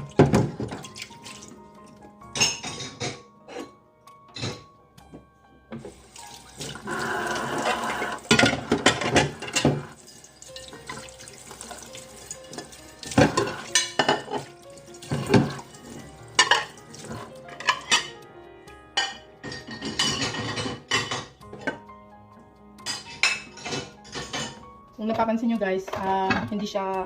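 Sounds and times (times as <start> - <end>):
dishes knocking and clattering: 0.0 - 1.0, 2.3 - 6.0, 6.6 - 18.1, 19.0 - 21.9, 22.8 - 24.6
water running from tap: 0.0 - 2.0, 5.8 - 18.1.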